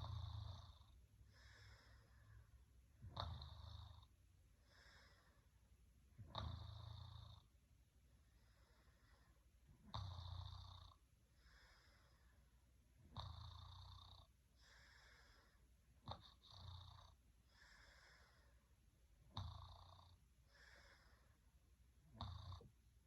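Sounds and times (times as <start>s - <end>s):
soft breath out: 1.2s - 2.7s, 4.6s - 5.6s, 8.2s - 9.5s, 11.3s - 12.6s, 14.6s - 15.7s, 17.4s - 18.7s, 20.4s - 21.5s.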